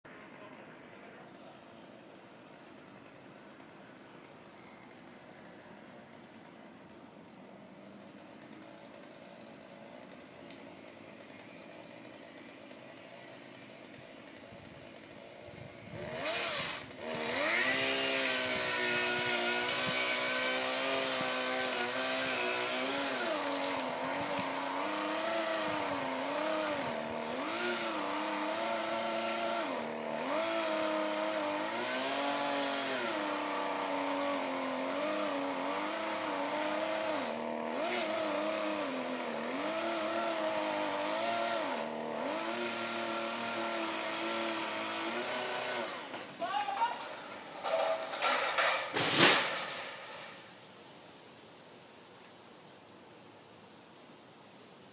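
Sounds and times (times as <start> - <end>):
chainsaw running: 8.0 - 50.6.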